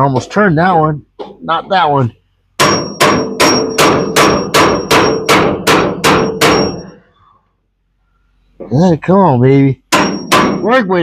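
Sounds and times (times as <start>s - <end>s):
hammer striking metal clanging: 2.6s - 7.0s, 9.9s - 11.0s.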